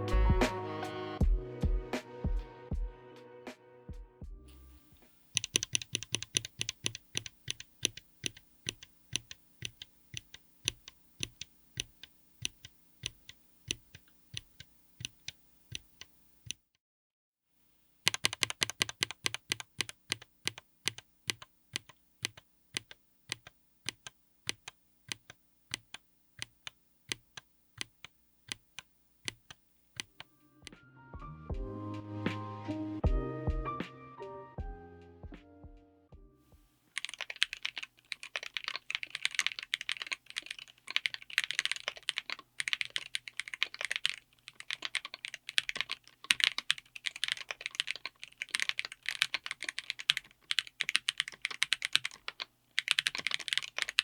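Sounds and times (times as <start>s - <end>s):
keyboard keystrokes clacking: 5.3s - 16.6s, 18.1s - 30.3s, 37.0s - 54.0s.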